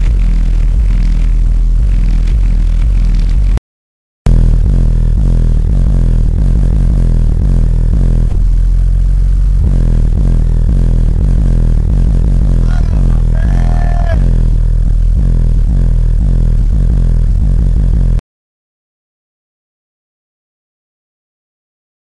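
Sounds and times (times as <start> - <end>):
loud bass-heavy music: 0.0 - 3.6, 4.3 - 18.2
person singing: 12.4 - 14.5.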